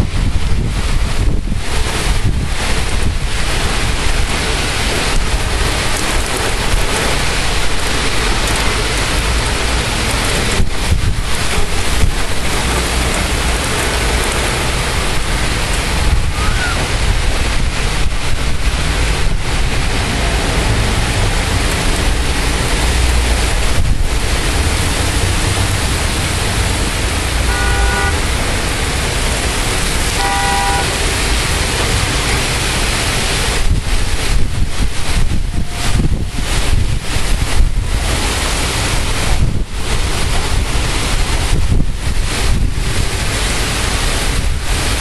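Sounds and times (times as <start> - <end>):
heavy rain pouring: 0.0 - 45.0
car horn honks: 27.4 - 28.3, 30.1 - 31.0.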